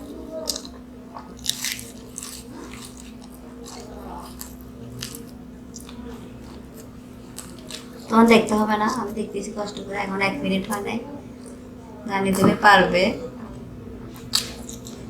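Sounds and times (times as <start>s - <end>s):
crunchy bites and chewing: 0.0s - 8.1s, 14.1s - 15.0s
steady low hum: 0.0s - 15.0s.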